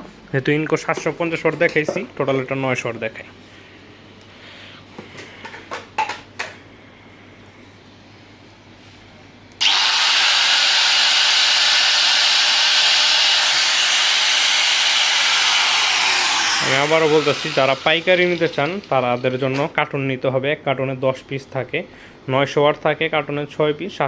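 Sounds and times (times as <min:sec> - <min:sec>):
angle grinder whining: 0:09.6 - 0:19.4.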